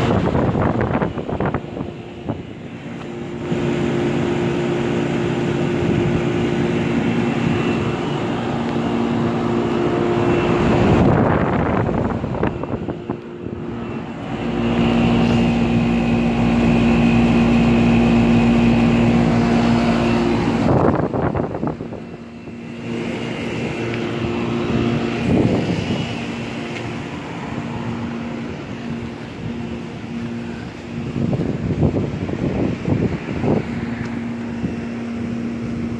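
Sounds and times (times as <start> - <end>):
compressor electrical hum: 0.0 - 35.9
condenser fans rushing: 0.0 - 35.9
loud rushing surge: 3.2 - 28.8.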